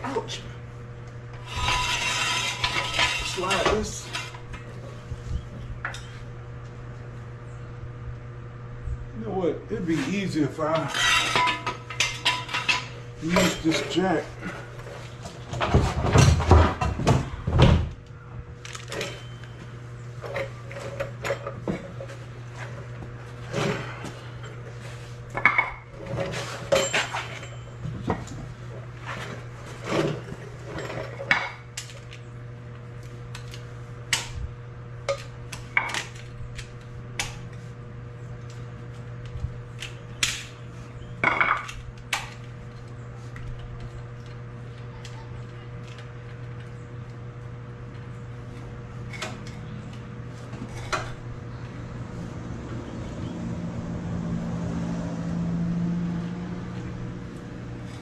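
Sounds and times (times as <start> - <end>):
steady low hum: 0.0 - 58.0
metal tools clinking and clanking: 1.5 - 4.4, 10.7 - 14.2, 25.4 - 27.8.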